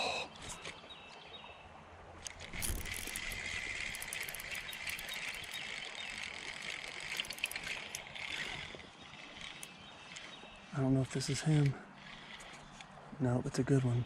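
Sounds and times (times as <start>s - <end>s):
fishing reel whirring and clicking: 2.2s - 12.9s.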